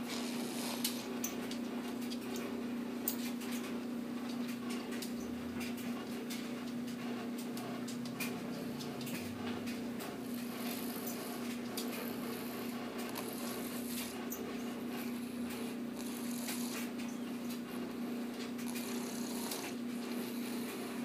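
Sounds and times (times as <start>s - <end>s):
baby snoring: 0.0s - 1.1s, 10.2s - 14.2s, 15.0s - 17.0s, 18.1s - 21.0s
steady low hum: 0.0s - 21.0s.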